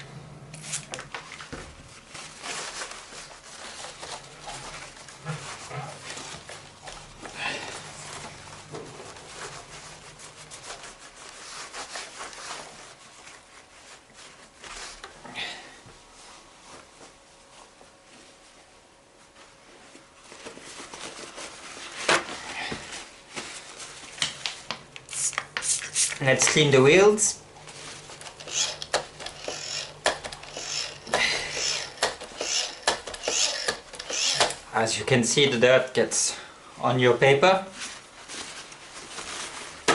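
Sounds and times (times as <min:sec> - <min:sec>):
paper towel wiping plastic: 0:00.7 - 0:15.0, 0:25.1 - 0:34.9, 0:37.6 - 0:39.9.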